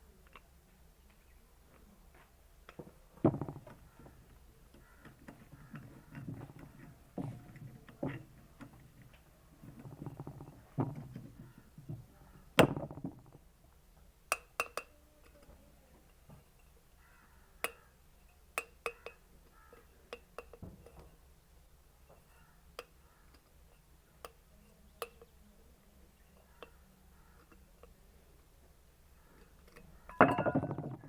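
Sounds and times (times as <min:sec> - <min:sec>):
metallic taps and clinks: 0:14.3 - 0:21.3, 0:22.0 - 0:25.3.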